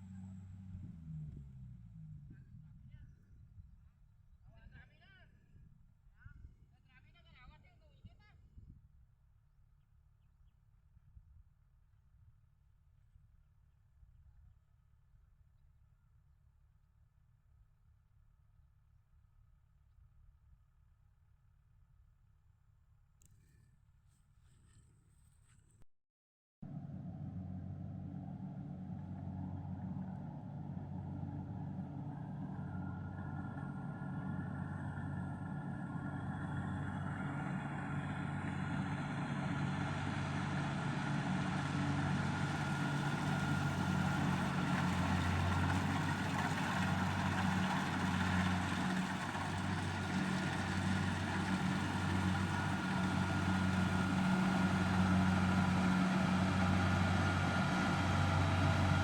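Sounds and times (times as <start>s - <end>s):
engine running: 0.0s - 3.1s, 26.6s - 59.0s.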